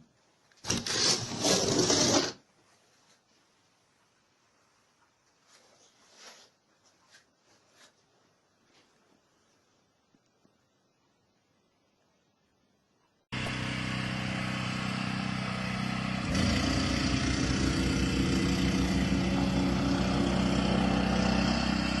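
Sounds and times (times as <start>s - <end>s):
engine running with fast pulsing: 13.3s - 22.0s.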